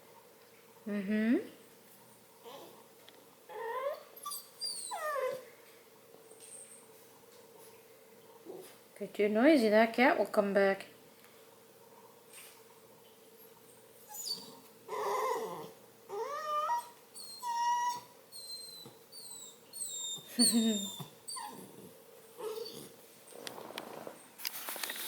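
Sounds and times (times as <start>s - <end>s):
puppy whining: 2.4s - 2.9s, 3.5s - 5.5s, 14.0s - 25.0s.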